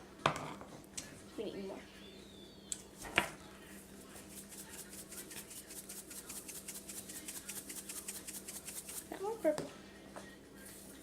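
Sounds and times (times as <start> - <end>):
rhythmic scratching of slime: 3.7 - 9.5
tap on a container: 9.5 - 9.7.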